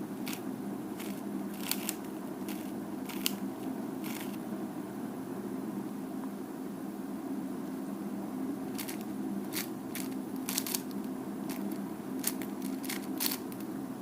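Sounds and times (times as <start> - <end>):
faint steady hum: 0.0 - 14.0
puzzle cube clicking: 1.0 - 3.4, 8.8 - 10.9, 11.5 - 13.6.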